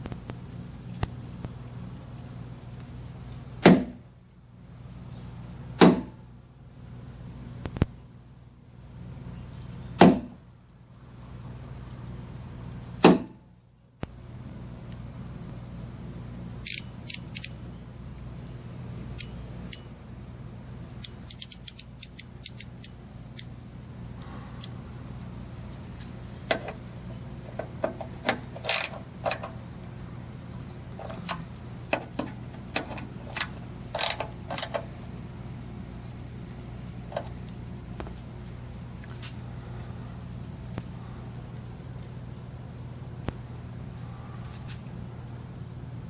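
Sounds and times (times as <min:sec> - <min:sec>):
ratchet clicking: 0:16.6 - 0:17.6, 0:21.0 - 0:23.5, 0:28.6 - 0:29.5, 0:32.8 - 0:34.8.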